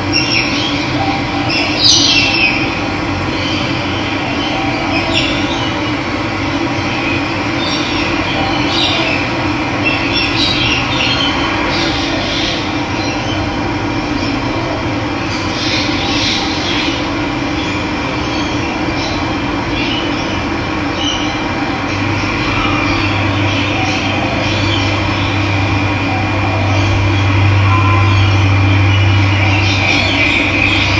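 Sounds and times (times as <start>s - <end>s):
wild birds chirping: 0.0s - 5.9s, 15.2s - 30.9s.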